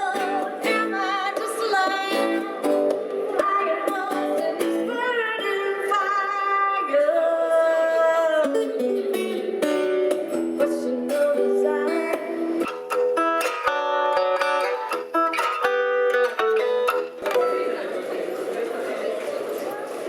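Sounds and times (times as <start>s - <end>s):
plucked acoustic guitar: 0.0s - 6.4s, 8.0s - 17.9s
woman singing with vibrato: 0.0s - 9.6s, 10.4s - 13.0s.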